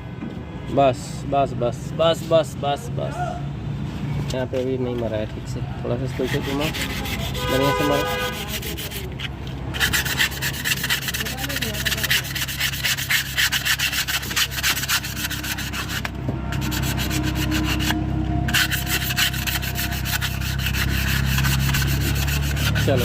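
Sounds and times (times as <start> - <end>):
sandpaper rubbing metal disc: 6.0 - 23.0.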